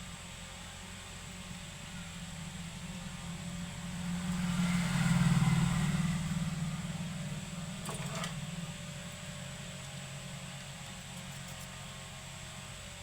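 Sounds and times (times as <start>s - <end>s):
vehicle engine passing by: 1.2s - 11.5s.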